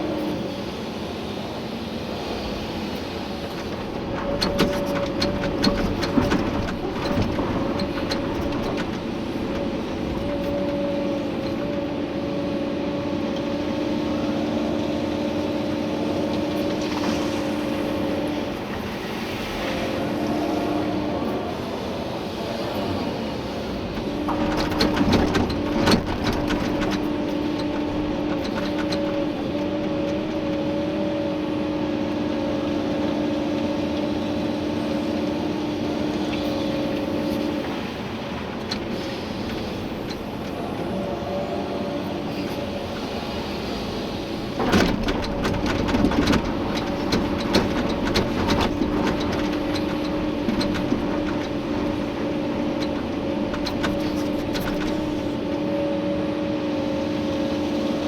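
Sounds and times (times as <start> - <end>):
excavator engine and hydraulics whine: 0.0 - 58.0.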